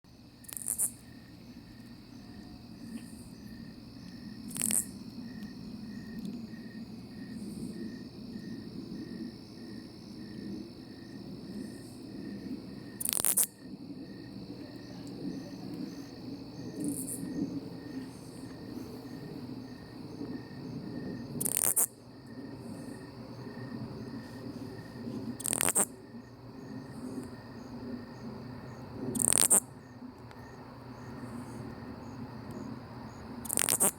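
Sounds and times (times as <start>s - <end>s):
night insects chorus: 0.1s - 33.9s
katydid harsh rasps: 0.4s - 1.0s, 4.5s - 5.0s, 13.0s - 13.6s, 21.4s - 22.0s, 25.4s - 25.9s, 29.1s - 29.7s, 33.4s - 33.9s.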